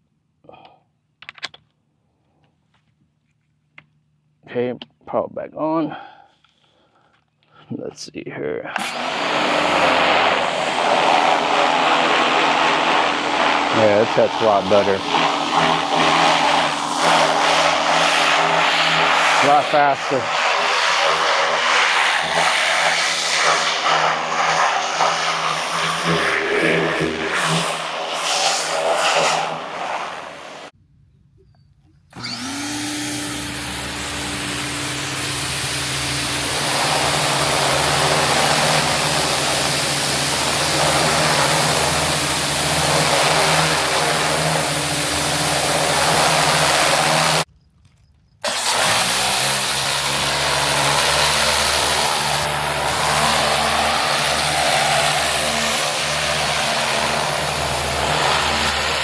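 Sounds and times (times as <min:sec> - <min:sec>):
pressure washer motor humming: 0:08.8 - 0:30.7, 0:32.1 - 0:47.5, 0:48.4 - 0:59.0
rising motor whine: 0:08.8 - 0:30.7, 0:32.1 - 0:47.5, 0:48.5 - 0:59.0
water jet hissing: 0:08.8 - 0:30.7, 0:33.2 - 0:47.5, 0:48.6 - 0:59.0.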